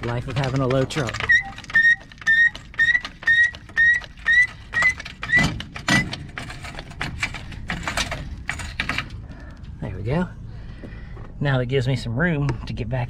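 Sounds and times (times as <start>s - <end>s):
jack pumping squeak and click: 0.0s - 9.0s.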